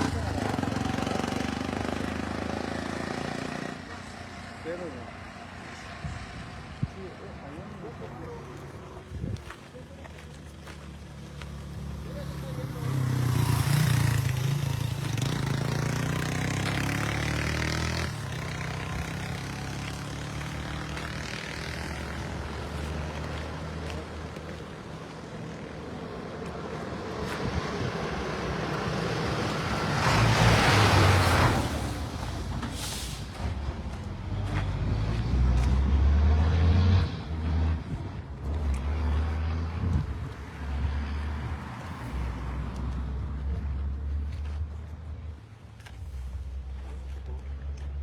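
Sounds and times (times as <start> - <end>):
truck and car engines droning: 0.0 - 48.0
vehicle passing with rushing hiss: 10.9 - 44.3.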